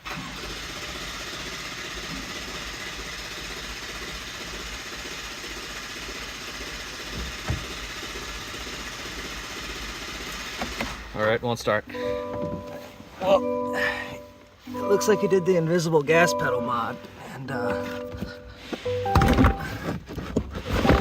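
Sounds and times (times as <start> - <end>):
truck engine droning: 11.9 - 20.1.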